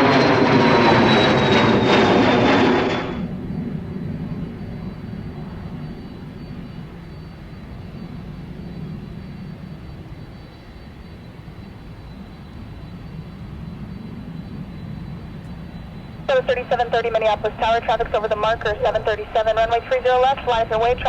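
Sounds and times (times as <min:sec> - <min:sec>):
jet rumble: 0:00.0 - 0:05.8, 0:13.4 - 0:21.0
faint high jet whine: 0:00.0 - 0:21.0.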